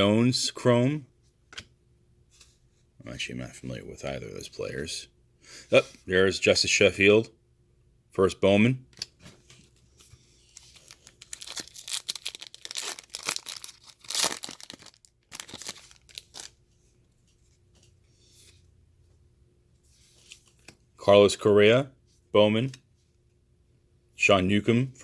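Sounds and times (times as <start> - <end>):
foil wrapper tearing and crinkling: 10.6 - 16.6.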